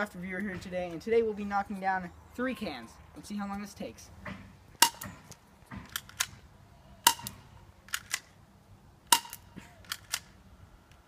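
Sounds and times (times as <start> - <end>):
airsoft pistol shots: 4.8 - 5.1, 7.0 - 8.2, 9.1 - 10.2.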